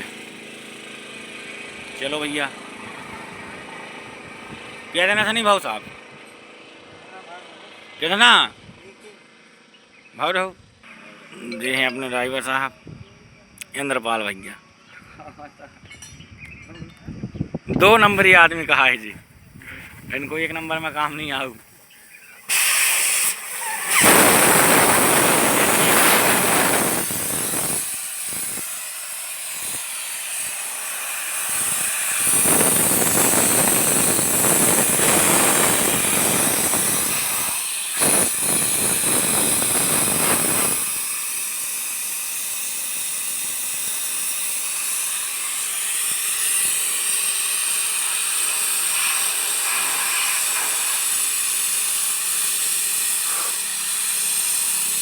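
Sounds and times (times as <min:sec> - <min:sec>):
compressed air hissing: 0:00.0 - 0:00.7, 0:19.0 - 0:55.0.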